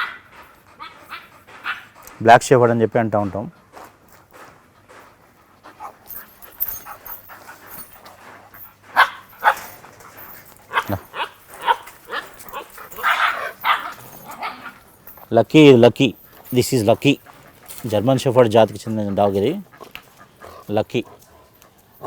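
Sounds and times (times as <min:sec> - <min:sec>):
dog barking: 0:00.0 - 0:00.2, 0:09.0 - 0:09.7, 0:10.7 - 0:14.8.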